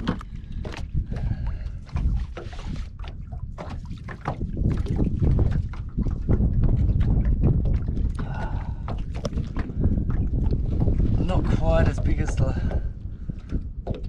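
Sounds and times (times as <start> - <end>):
fish thumping and slapping: 0.0 - 14.0
low rumble: 4.4 - 13.8.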